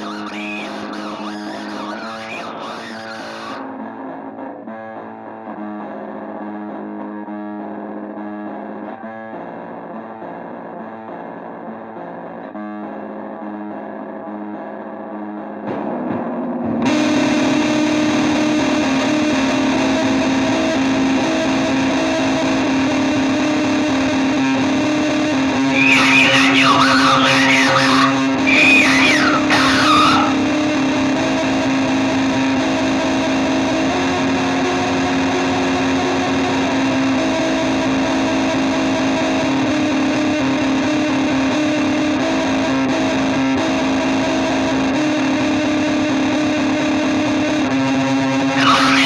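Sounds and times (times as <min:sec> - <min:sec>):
rock music with distorted guitar: 0:00.0 - 0:05.2, 0:22.8 - 0:37.2, 0:40.2 - 0:49.0.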